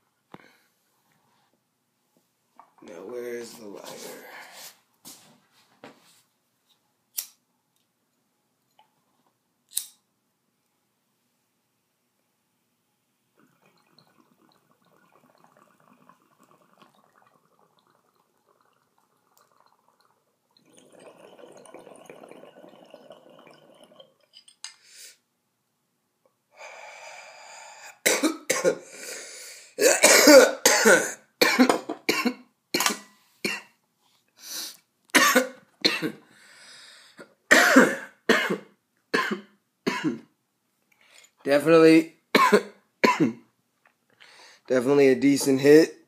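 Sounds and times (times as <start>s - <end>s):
water bubbling in a bong: 13.4s - 24.4s
person coughing: 28.0s - 28.8s, 29.8s - 33.7s, 37.5s - 40.3s, 42.4s - 43.4s.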